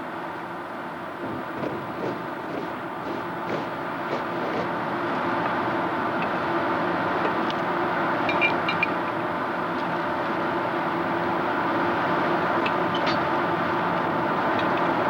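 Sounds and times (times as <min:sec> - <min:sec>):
train rumbling: 0:01.1 - 0:05.4.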